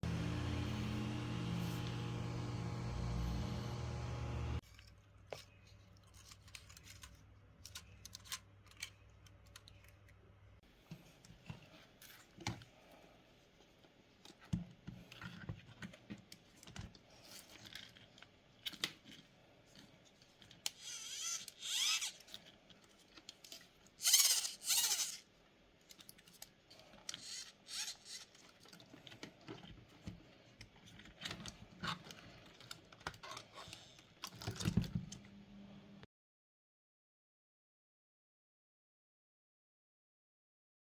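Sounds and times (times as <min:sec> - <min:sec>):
steady electrical hum: 0:00.0 - 0:04.6.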